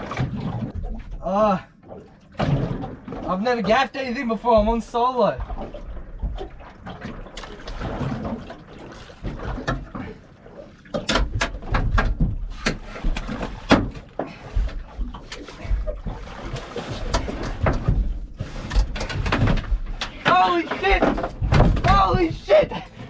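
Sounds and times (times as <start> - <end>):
water splashing: 0.0 - 23.0
knocks against a boat: 10.9 - 16.0, 17.0 - 22.6.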